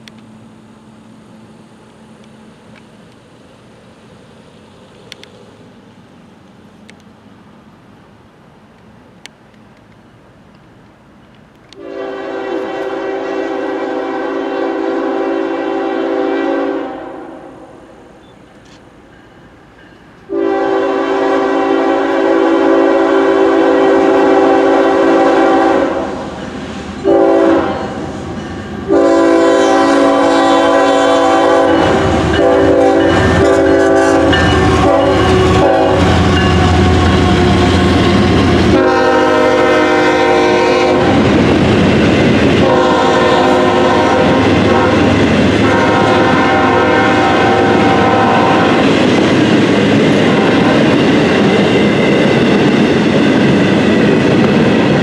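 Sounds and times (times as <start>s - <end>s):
train rumbling past: 0.0s - 55.0s
locomotive air horn blasts: 11.8s - 17.8s, 20.3s - 26.3s, 27.0s - 28.1s, 28.8s - 41.3s, 42.6s - 48.9s, 50.2s - 51.0s.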